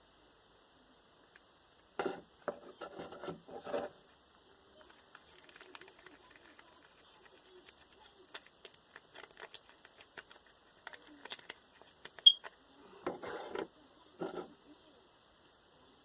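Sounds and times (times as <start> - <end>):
slime being stirred by hand: 4.7 - 12.6.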